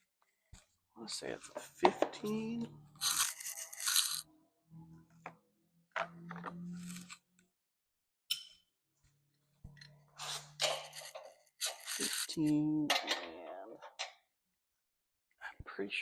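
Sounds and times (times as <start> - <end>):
metal tools scraping and rattling: 9.7 - 14.1.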